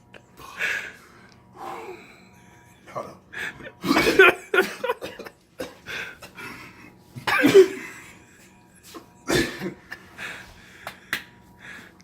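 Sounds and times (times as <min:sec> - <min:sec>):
man coughing: 0:03.6 - 0:06.6, 0:07.2 - 0:08.3, 0:09.2 - 0:10.0.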